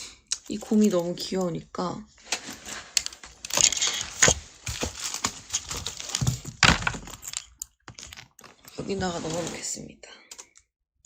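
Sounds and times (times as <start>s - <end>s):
paper money rustling: 2.2s - 7.3s.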